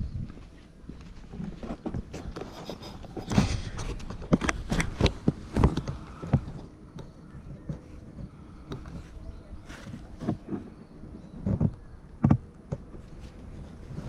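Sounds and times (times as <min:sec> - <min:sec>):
footsteps scuffing on a path: 0:00.1 - 0:05.8.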